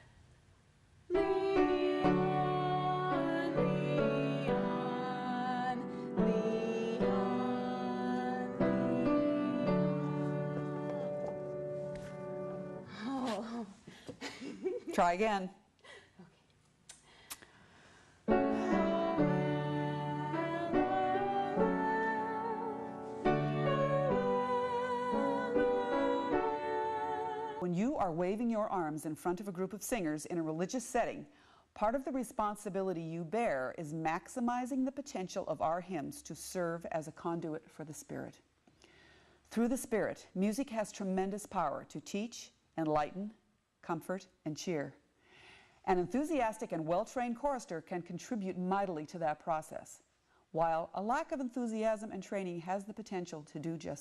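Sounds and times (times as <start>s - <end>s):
hymn played on keyboard: 1.1s - 12.8s, 18.3s - 27.6s.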